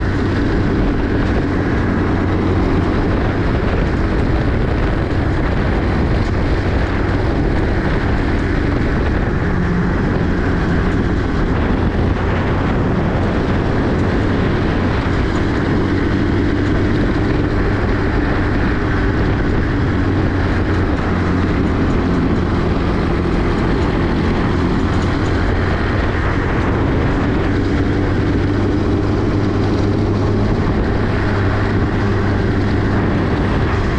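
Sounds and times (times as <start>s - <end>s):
small buggy engine running: 0.0s - 33.9s
wind and road noise: 0.0s - 33.9s.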